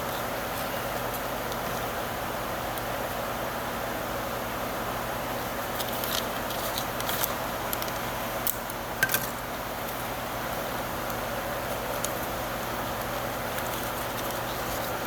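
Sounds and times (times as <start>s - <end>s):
sharp clicks and crackles of cable wrapping: 5.7s - 10.1s, 11.0s - 15.0s.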